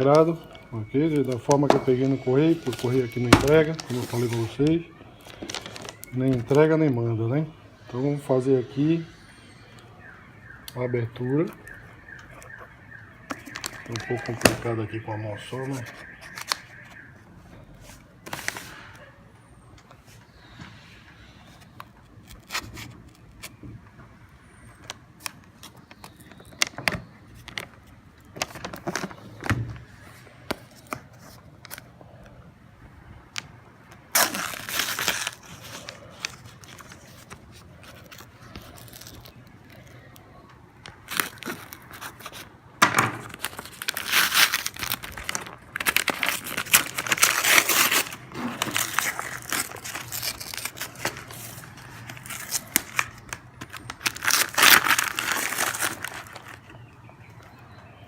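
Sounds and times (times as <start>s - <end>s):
packaging tearing and crinkling: 1.1s - 6.6s, 15.7s - 17.0s, 22.2s - 23.6s, 33.9s - 40.2s, 40.8s - 56.8s
package clicks and scratches: 1.2s - 6.6s, 15.7s - 17.0s, 21.8s - 23.6s, 34.0s - 39.9s, 40.8s - 42.5s, 43.1s - 56.8s.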